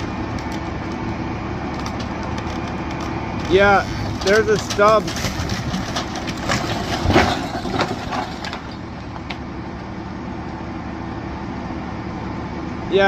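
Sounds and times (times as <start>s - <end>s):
engine idling: 0.0s - 13.0s
sharp cracks and snaps: 0.3s - 3.6s.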